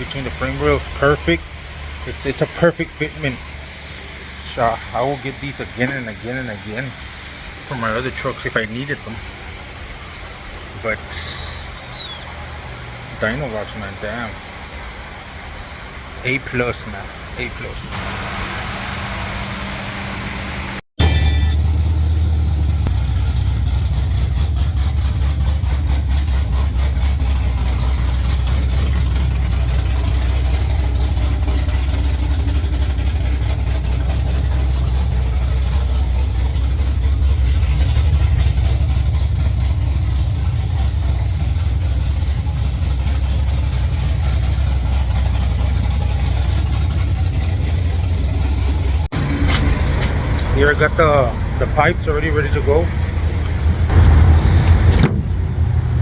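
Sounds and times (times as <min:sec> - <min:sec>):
truck engine idling: 0:00.0 - 0:56.0.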